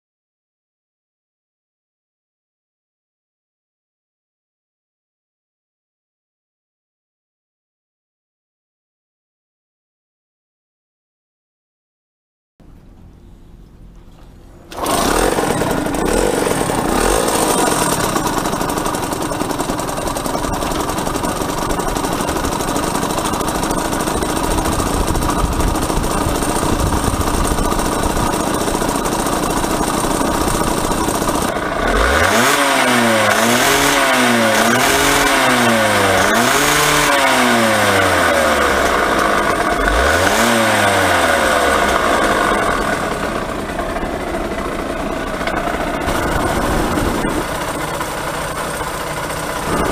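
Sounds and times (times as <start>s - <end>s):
two-stroke motorcycle engine revving: 14.6s - 49.9s.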